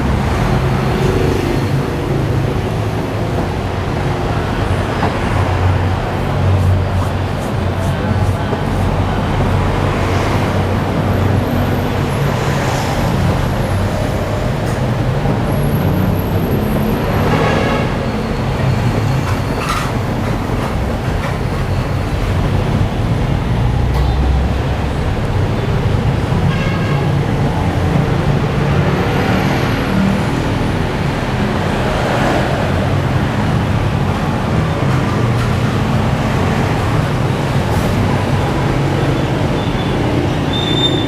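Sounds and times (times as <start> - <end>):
traffic engines rumbling: 0.0 - 41.0
car horn toots: 9.1 - 18.0, 19.3 - 29.1.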